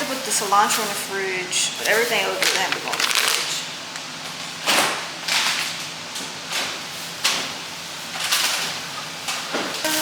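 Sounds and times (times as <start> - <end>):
plastic bag rustling: 1.8 - 3.7.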